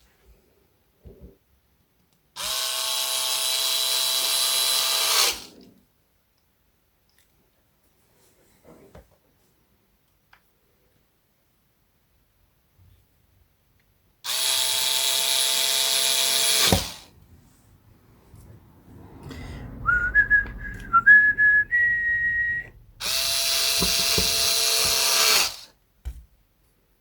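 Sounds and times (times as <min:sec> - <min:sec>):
electric drill whining: 0:02.4 - 0:05.5, 0:14.3 - 0:17.1, 0:22.1 - 0:25.7.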